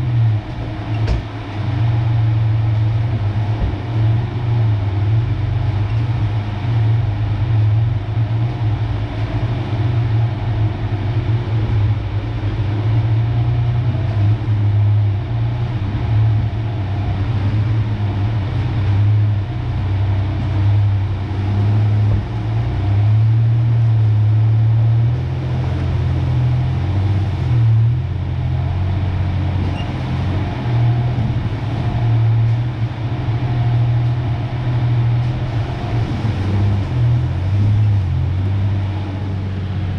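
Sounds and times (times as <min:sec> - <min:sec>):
truck engine running: 0:00.0 - 0:39.9.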